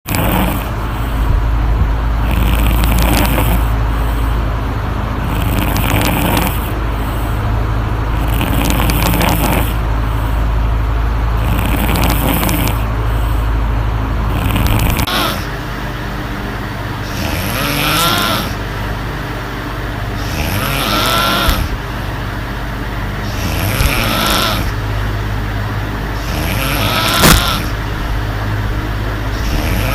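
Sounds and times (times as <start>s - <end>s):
woman snoring: 0.0s - 0.8s, 2.2s - 3.7s, 5.2s - 6.7s, 8.2s - 9.8s, 11.4s - 12.9s, 14.3s - 15.5s, 17.0s - 18.6s, 20.2s - 21.8s, 23.2s - 24.8s, 26.2s - 27.8s, 29.3s - 29.9s
electric fan humming: 0.0s - 29.9s.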